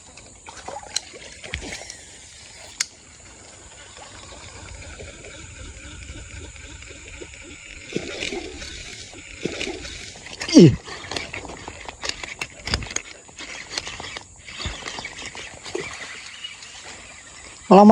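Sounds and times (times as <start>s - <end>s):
water splashing and trickling: 0.0s - 17.8s
sharp clicks: 5.8s - 17.1s.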